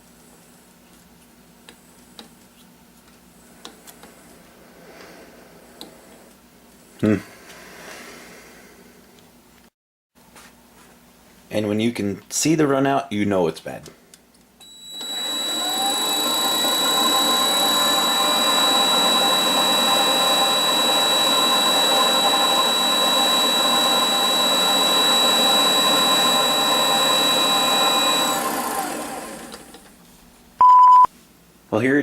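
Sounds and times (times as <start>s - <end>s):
lathe motor whining: 14.6s - 30.0s.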